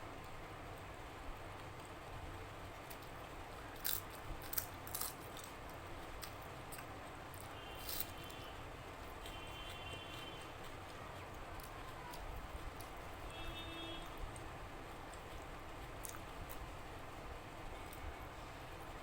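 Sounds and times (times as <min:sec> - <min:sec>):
person chewing food: 0:02.8 - 0:13.0, 0:15.9 - 0:16.7.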